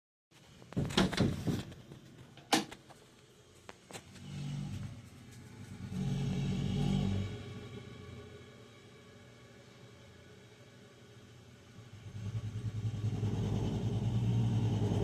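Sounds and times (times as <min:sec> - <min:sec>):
water heater low rumble: 0:00.4 - 0:15.0.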